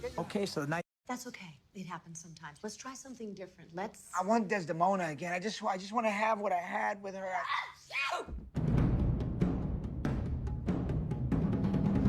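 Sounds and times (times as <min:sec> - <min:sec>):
background music with low drums: 0:08.4 - 0:12.0.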